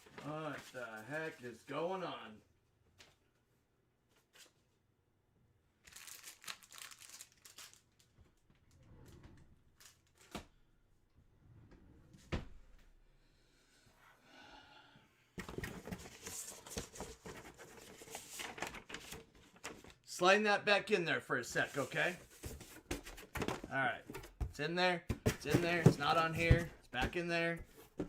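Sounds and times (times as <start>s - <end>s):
packaging crinkling and rustling: 5.8s - 8.4s.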